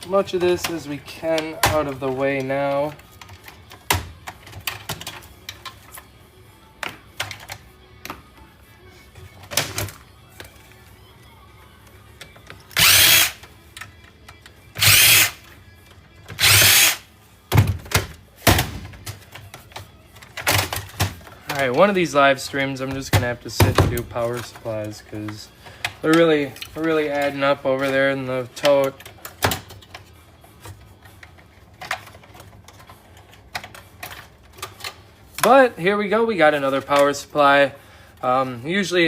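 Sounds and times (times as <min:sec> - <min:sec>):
parts clicking and rattling: 0:00.0 - 0:06.2, 0:06.8 - 0:08.2, 0:12.1 - 0:35.6
cordless drill whirring: 0:12.8 - 0:13.4, 0:14.8 - 0:15.4, 0:16.4 - 0:17.0.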